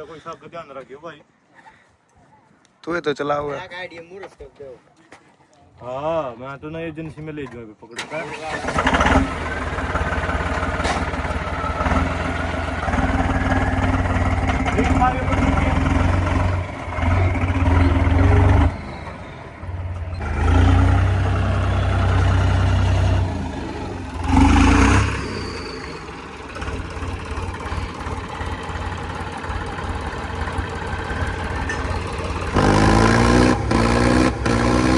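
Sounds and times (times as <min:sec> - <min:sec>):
tractor diesel engine revving: 0:08.0 - 0:34.9.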